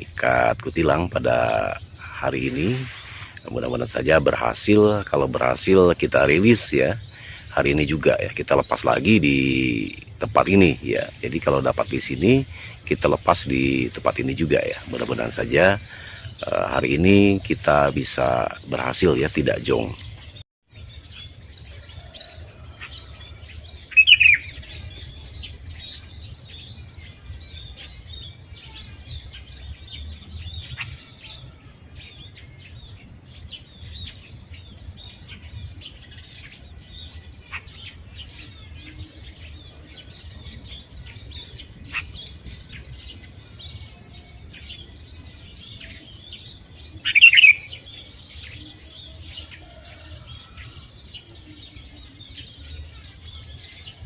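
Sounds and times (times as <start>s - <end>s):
bird calling: 0.0s - 20.4s, 21.7s - 54.0s
faint chirps: 0.0s - 54.0s
high-pitched insect drone: 0.0s - 54.0s.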